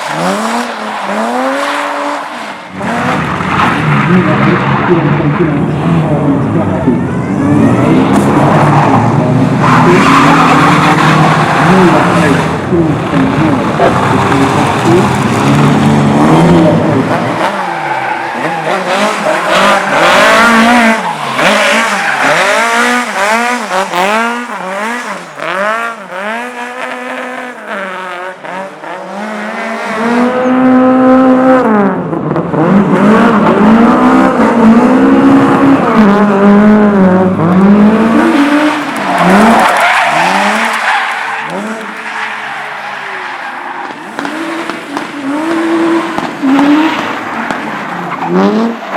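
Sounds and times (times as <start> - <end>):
car engine revving hard: 0.0 - 6.5, 7.7 - 48.9
tyres squealing on pavement: 7.0 - 16.3, 16.9 - 25.6, 38.0 - 48.9.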